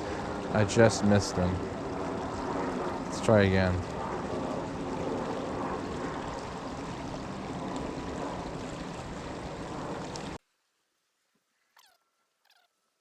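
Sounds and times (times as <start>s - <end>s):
creek water rushing: 0.0s - 10.4s.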